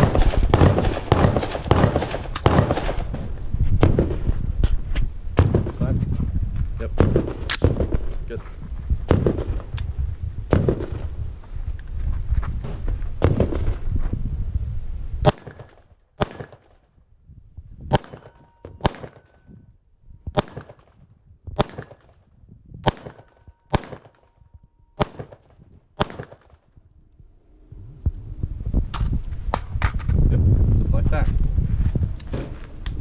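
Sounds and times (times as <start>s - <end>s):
rifle shots with ringing tail: 0.0s - 4.3s, 5.4s - 5.8s, 7.0s - 8.2s, 9.1s - 9.6s, 10.5s - 11.0s, 13.2s - 13.8s, 15.2s - 16.9s, 17.9s - 19.6s, 20.3s - 26.8s
low rushing noise: 26.7s - 33.0s.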